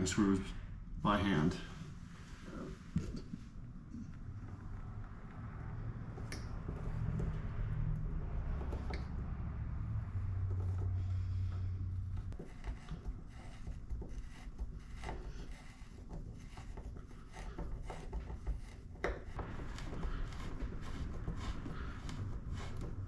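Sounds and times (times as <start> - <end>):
low hum: 0.0 - 12.4, 19.4 - 23.0.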